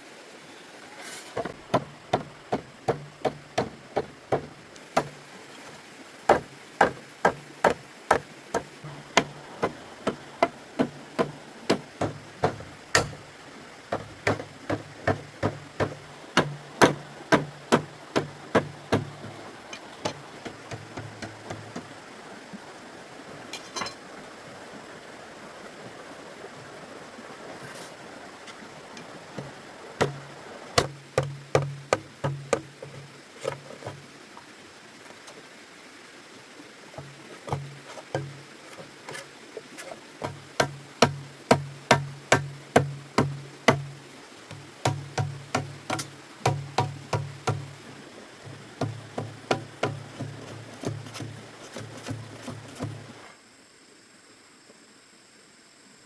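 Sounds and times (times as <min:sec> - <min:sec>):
sharp hammering blows: 0:01.4 - 0:05.2, 0:06.3 - 0:21.9, 0:29.4 - 0:33.1, 0:37.0 - 0:38.5, 0:40.2 - 0:47.8, 0:48.4 - 0:53.2.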